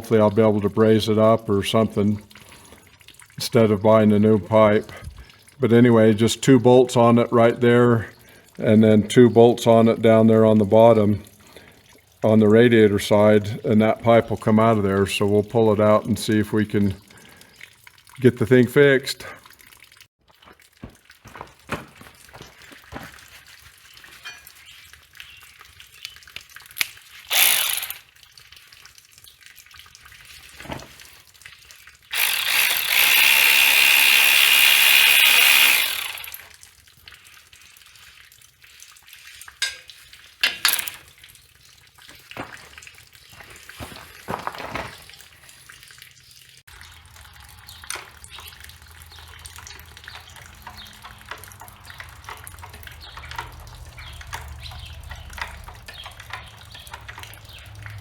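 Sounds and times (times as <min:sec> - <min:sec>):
metal tool clicks and knocks: 0:40.4 - 0:41.0.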